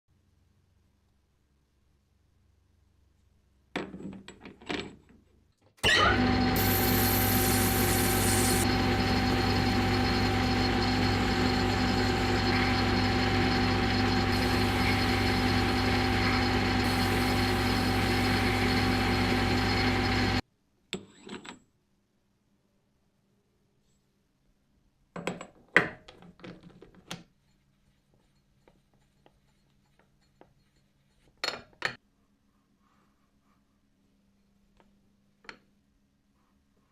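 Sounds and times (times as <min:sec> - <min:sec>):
lathe motor humming: 0:05.9 - 0:20.4.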